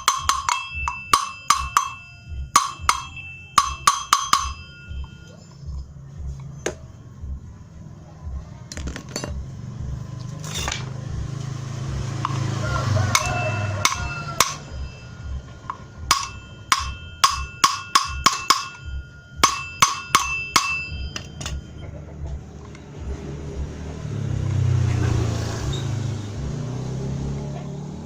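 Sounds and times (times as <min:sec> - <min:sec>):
metal part clinking: 0:00.0 - 0:05.8, 0:08.7 - 0:09.4, 0:10.2 - 0:10.9, 0:13.2 - 0:21.8.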